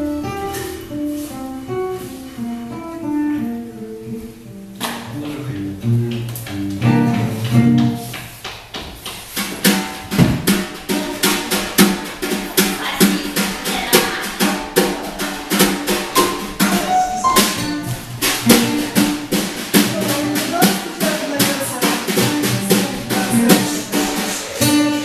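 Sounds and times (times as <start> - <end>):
drum kit beat: 0.0 - 2.7, 4.9 - 25.0
live band music: 0.0 - 8.1, 10.1 - 25.0.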